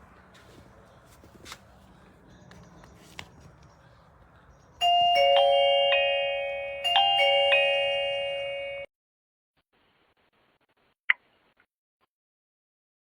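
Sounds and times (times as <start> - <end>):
doorbell ding-dong chime: 4.8 - 8.9.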